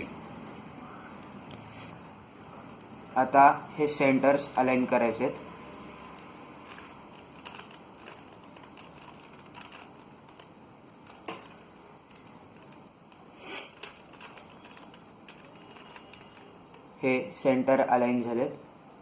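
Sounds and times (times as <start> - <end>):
puzzle cube twisting clicks: 5.5 - 16.9.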